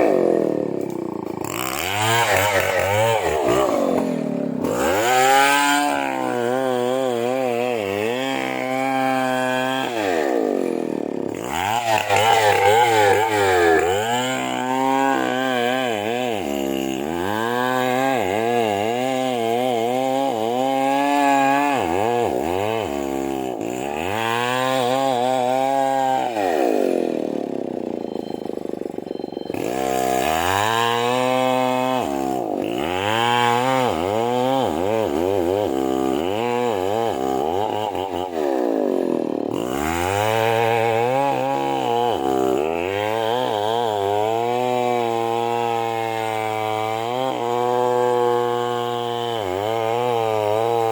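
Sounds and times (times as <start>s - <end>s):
chainsaw cutting wood: 0.0s - 50.9s.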